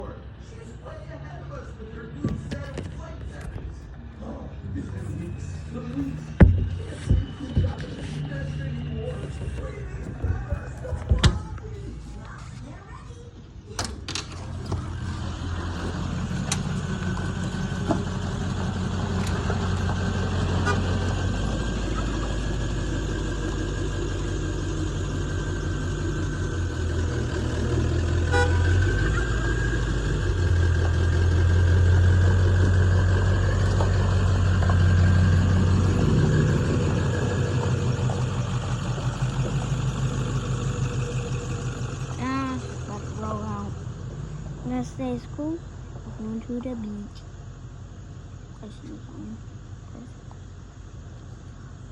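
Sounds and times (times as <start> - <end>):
diesel engine droning: 0.0 - 51.9
high turbo whistle: 28.1 - 30.2.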